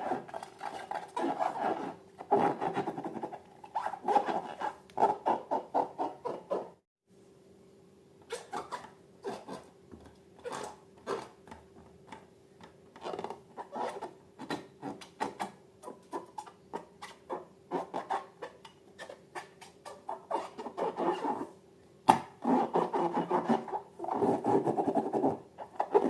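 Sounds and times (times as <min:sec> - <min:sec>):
faint steady hum: 0:07.1 - 0:26.0.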